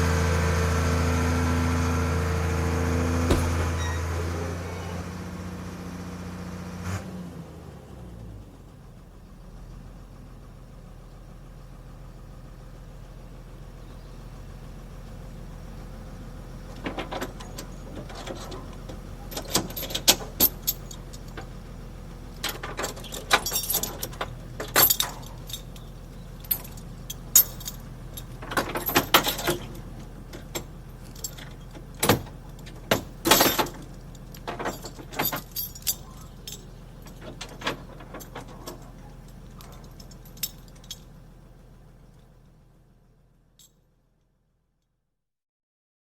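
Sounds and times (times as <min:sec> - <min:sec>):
low engine hum: 0:00.0 - 0:44.2
metallic clanks and rattles: 0:03.2 - 0:04.2, 0:16.7 - 0:21.6, 0:22.3 - 0:41.2.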